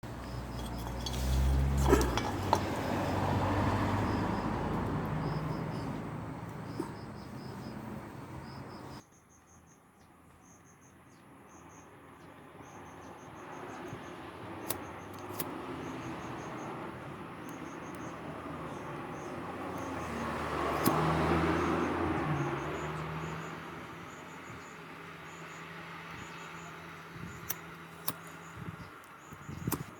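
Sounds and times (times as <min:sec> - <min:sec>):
crickets chirping: 0:00.1 - 0:29.9.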